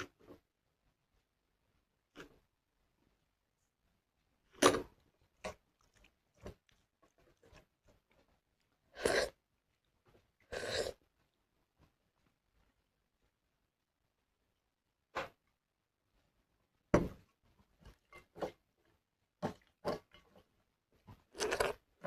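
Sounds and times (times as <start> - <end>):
noisy mouth sounds: 8.9 - 9.4
person chewing and biting food: 21.3 - 21.8.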